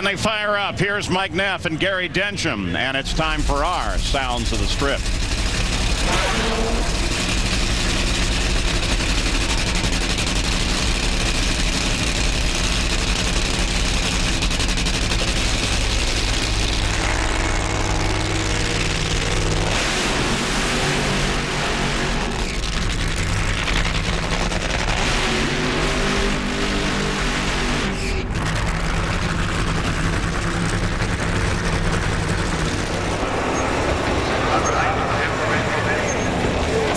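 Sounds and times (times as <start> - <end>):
drag racing engines revving: 0.0 - 36.9.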